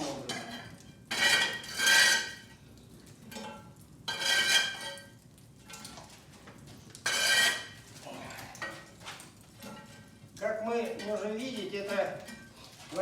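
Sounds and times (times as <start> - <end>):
metal scraping on pot lid: 0.4 - 2.4, 4.1 - 5.0, 7.0 - 7.8.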